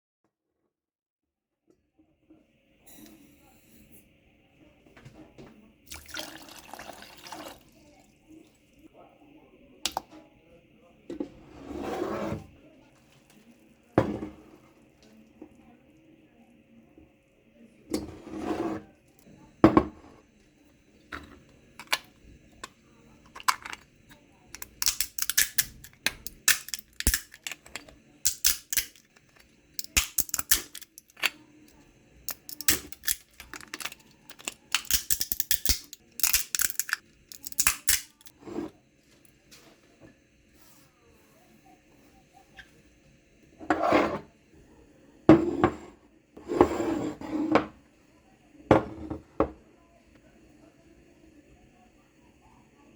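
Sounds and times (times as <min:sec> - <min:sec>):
dishes and utensils clinking: 0:32.3 - 0:38.7.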